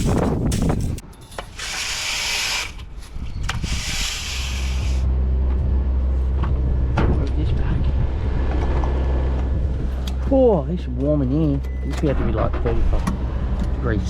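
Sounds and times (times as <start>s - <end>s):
air hissing: 0.0s - 2.8s, 3.5s - 5.1s.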